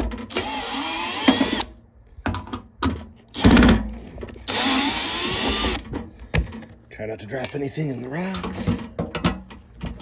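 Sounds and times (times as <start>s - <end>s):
power drill whining: 0.3s - 1.7s, 4.4s - 5.8s.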